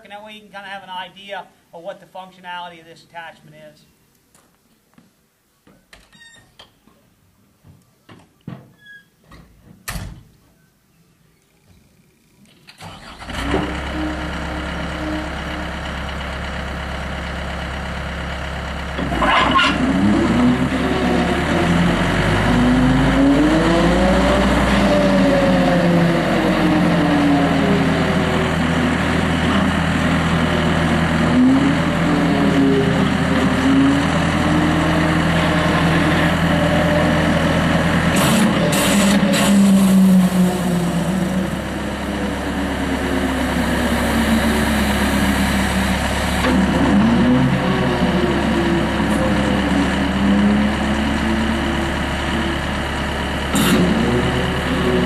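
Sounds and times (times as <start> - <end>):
loader engine running: 12.7 - 55.0.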